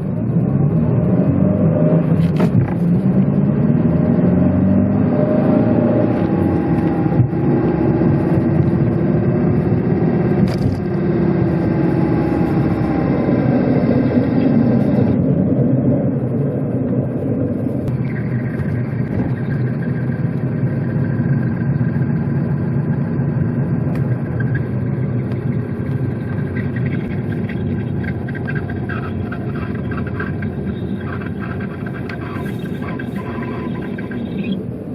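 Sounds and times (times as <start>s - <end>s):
car engine driving: 0.0s - 34.9s
road noise: 0.0s - 34.9s.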